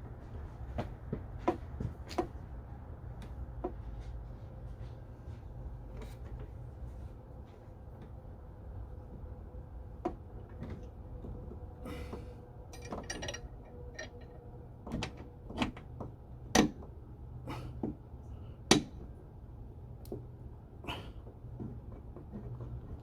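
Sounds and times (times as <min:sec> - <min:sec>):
low steady hum: 0:00.0 - 0:23.0
tools and metal parts knocking: 0:12.8 - 0:15.2.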